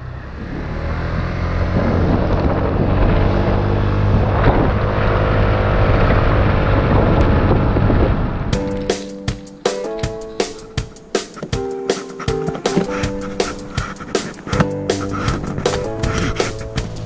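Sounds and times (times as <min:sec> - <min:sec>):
engine running loudly: 0:00.0 - 0:08.5.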